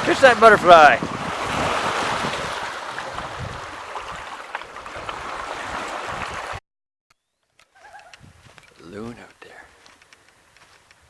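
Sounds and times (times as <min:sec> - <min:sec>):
lake water washing against shore: 0:00.0 - 0:06.6
wind: 0:00.0 - 0:11.0
light clicks: 0:07.5 - 0:11.0.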